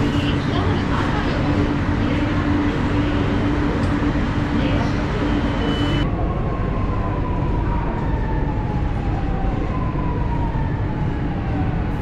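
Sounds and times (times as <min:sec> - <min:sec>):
train carriage rumble: 0:00.0 - 0:12.0
train motor whine: 0:01.2 - 0:06.0.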